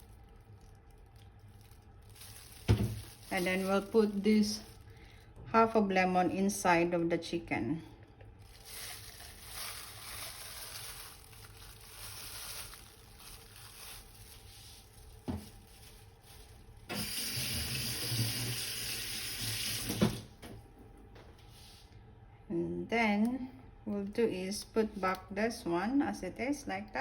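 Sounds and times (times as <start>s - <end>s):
tap running into sink: 16.9s - 20.3s.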